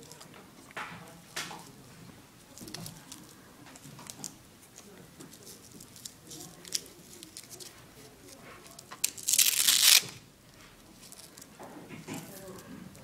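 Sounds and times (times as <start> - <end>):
loud ripping sound: 9.0 - 10.2.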